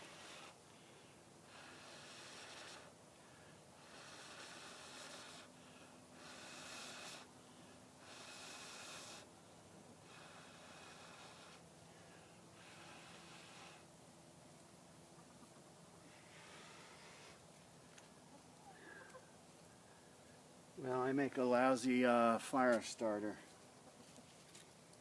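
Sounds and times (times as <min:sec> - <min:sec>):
person blowing on tinder: 0:00.0 - 0:00.6, 0:01.5 - 0:02.9, 0:03.8 - 0:05.5, 0:06.2 - 0:07.3, 0:08.0 - 0:09.3, 0:12.6 - 0:13.9.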